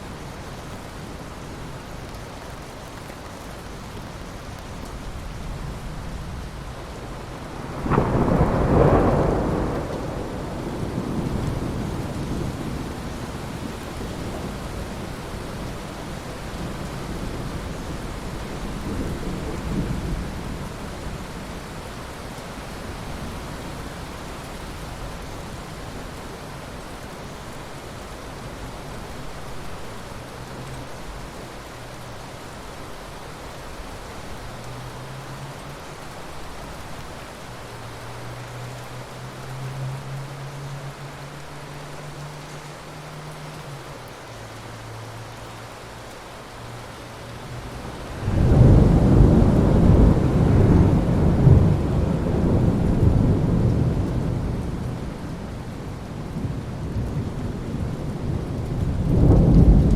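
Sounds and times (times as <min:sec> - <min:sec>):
steady rain: 0:00.0 - 0:59.9
thunder crack and rumble: 0:07.2 - 0:21.8, 0:47.8 - 0:59.9.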